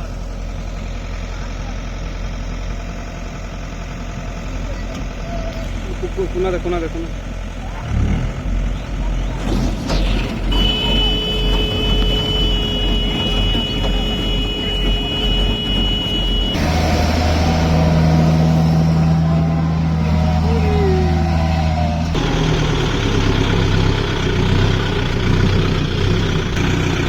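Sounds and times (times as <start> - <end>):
diesel engine running: 0.0 - 27.0
high-pitched tone: 10.5 - 22.2.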